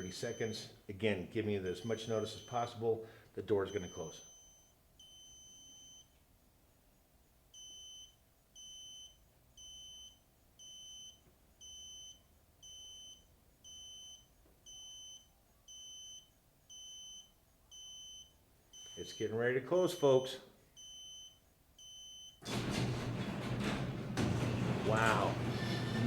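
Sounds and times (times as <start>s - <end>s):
short high warning beeps: 3.7s - 6.1s, 7.6s - 22.4s.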